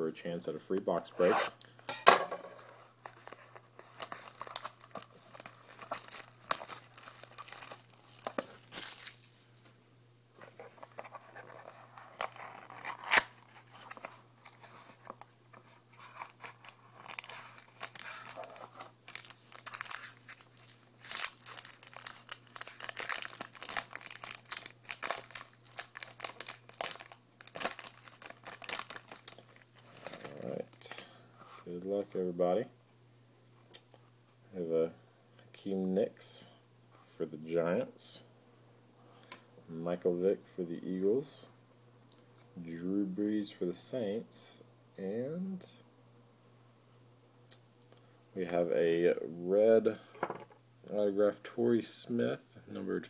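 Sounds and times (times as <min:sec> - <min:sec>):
packaging crinkling and tearing: 0:03.0 - 0:09.4, 0:10.8 - 0:15.2, 0:16.0 - 0:30.6.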